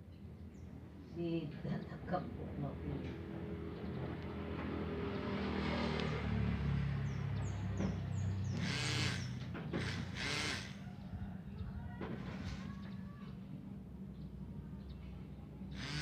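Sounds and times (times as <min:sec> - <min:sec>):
small motor buzzing hum: 0:07.8 - 0:10.8, 0:15.7 - 0:16.0.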